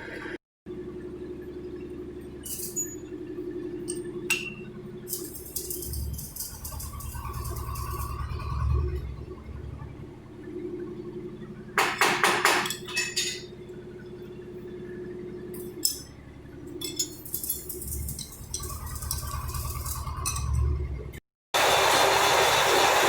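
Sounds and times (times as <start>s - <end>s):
metal-on-metal clinks: 5.1s - 8.2s, 16.8s - 20.7s
lathe humming: 21.6s - 23.0s.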